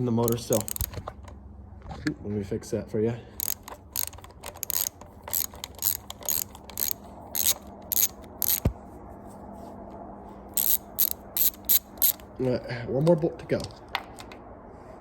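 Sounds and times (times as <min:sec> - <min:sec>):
socket ratchet clicking: 0:00.0 - 0:01.3, 0:03.4 - 0:08.7, 0:10.6 - 0:12.3.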